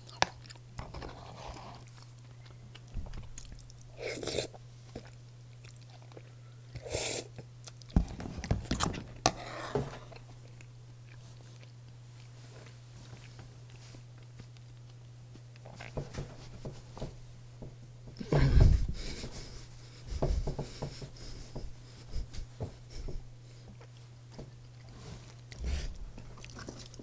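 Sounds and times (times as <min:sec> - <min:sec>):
chewing and biting food: 0:00.0 - 0:08.0, 0:10.0 - 0:16.0, 0:23.7 - 0:27.0
steady low hum: 0:00.0 - 0:27.0.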